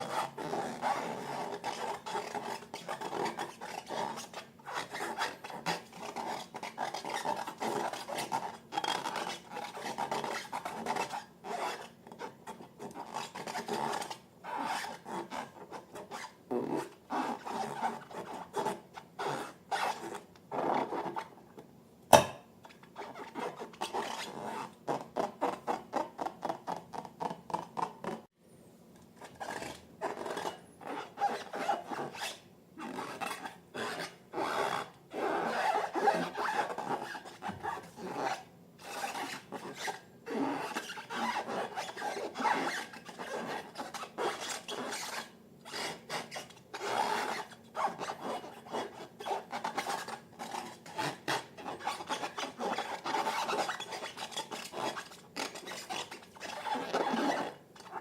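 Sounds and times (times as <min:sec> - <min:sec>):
balloons being rubbed: 0:00.0 - 0:21.3, 0:29.2 - 0:58.0
sharp balloon snap: 0:22.1 - 0:22.4.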